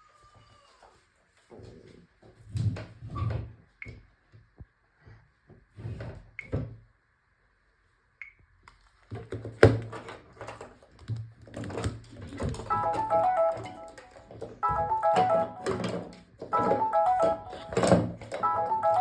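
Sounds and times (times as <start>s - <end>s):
faint steady high tone: 12.7s - 19.0s.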